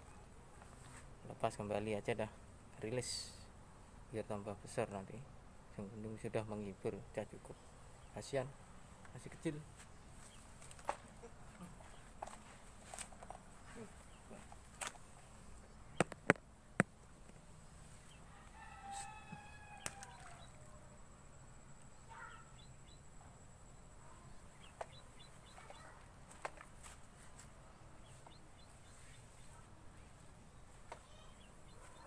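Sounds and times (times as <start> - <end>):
low steady background noise: 0.0 - 32.0
sharp clicks or knocks: 16.0 - 17.0
faint bird chirps: 18.0 - 26.1, 27.6 - 32.0
rooster crowing: 18.2 - 20.8.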